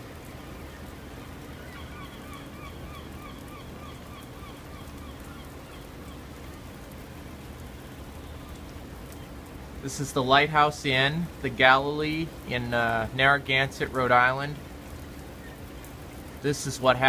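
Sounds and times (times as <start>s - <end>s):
background hiss: 0.0s - 17.0s
gull calling: 1.5s - 6.3s.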